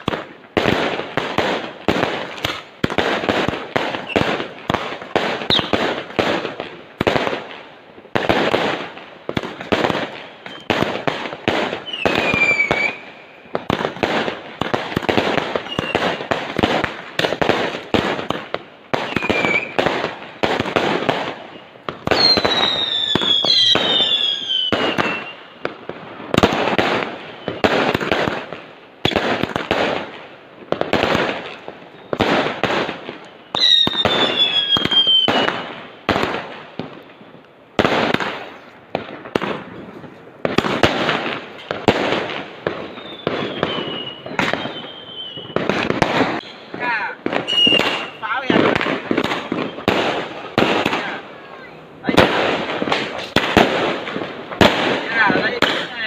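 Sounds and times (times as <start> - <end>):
fireworks bangs and crackling: 0.0 - 56.0
fireworks whistles falling in pitch: 3.9 - 4.4, 5.4 - 5.9, 9.8 - 11.0, 11.6 - 13.8, 15.1 - 16.4, 18.9 - 25.8, 26.4 - 28.0, 31.8 - 35.8, 42.7 - 50.1.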